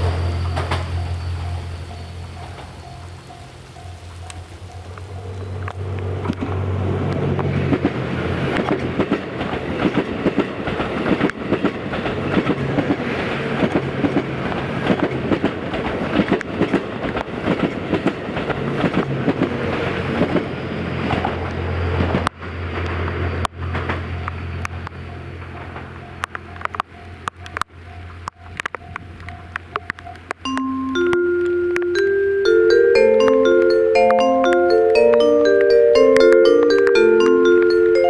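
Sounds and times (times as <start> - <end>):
diesel train engine hum: 0.0 - 15.7
train wheels clattering on rails: 0.0 - 30.4.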